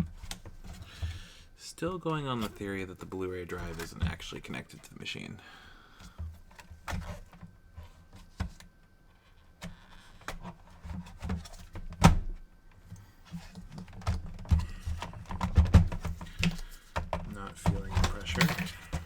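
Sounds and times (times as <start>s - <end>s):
clicks and knocks of handled parts: 12.8s - 19.0s.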